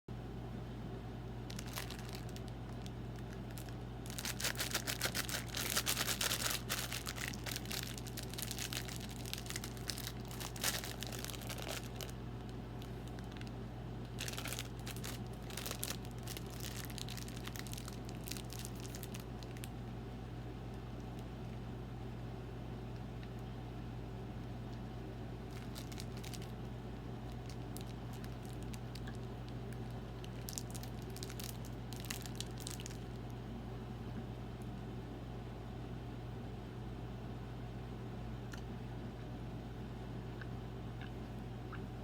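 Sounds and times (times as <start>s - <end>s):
low electrical hum: 0.1s - 42.0s
packaging crinkling and tearing: 1.5s - 19.7s, 25.5s - 26.6s, 27.2s - 33.3s.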